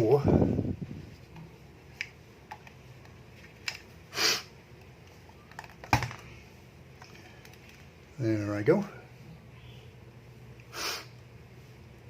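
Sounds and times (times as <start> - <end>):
person sniffing: 4.1 - 4.5, 10.7 - 11.2.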